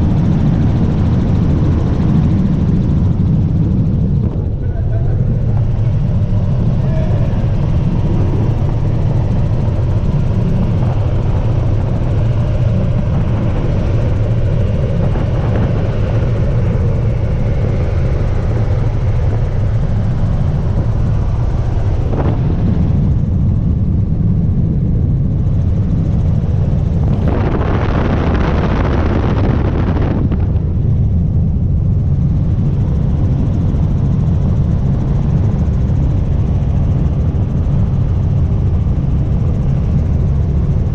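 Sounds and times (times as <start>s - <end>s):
helicopter rotor and engine drone: 0.0s - 40.9s.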